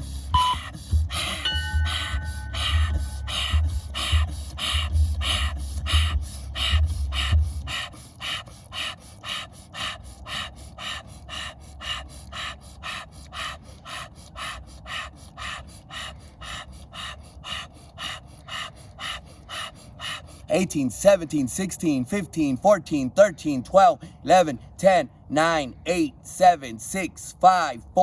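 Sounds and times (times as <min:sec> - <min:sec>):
low rhythmic thumping: 0:00.0 - 0:20.5
fast forceful mouth breathing: 0:00.0 - 0:25.3.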